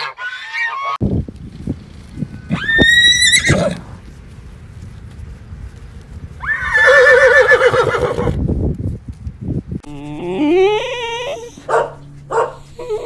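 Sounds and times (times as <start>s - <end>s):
horse whinnying: 2.5s - 3.8s, 6.4s - 8.4s, 10.2s - 11.7s.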